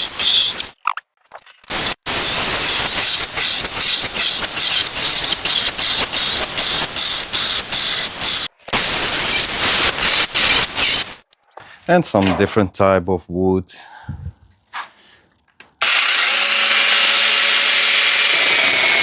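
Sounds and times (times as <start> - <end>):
chainsaw cutting wood: 15.8 - 19.0.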